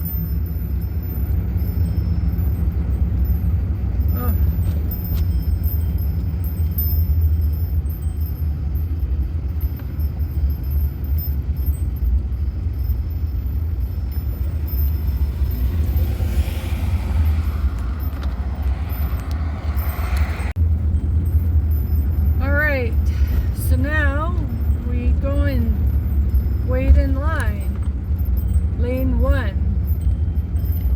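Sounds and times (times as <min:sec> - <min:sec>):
van engine and road rumble: 0:00.0 - 0:30.9.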